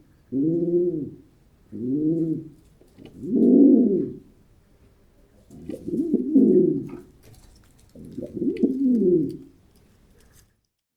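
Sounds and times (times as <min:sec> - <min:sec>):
pigeon cooing: 0:00.3 - 0:04.3, 0:05.5 - 0:07.1, 0:08.0 - 0:09.5.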